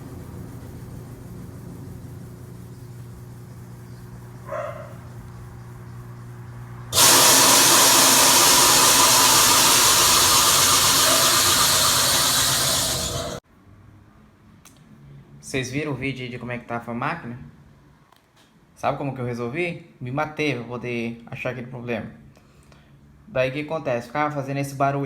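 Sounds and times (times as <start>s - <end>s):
washing machine motor hum: 0.0s - 13.4s.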